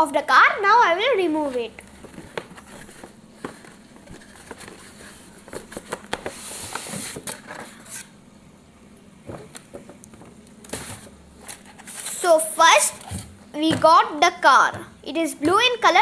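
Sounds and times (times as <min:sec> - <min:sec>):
packaging rustling: 0:01.8 - 0:08.0.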